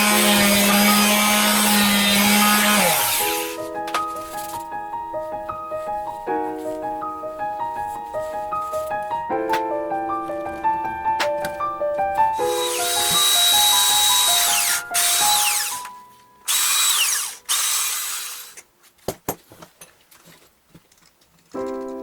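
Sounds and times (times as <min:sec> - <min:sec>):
electric drill whining: 0:12.4 - 0:15.9, 0:16.5 - 0:18.6.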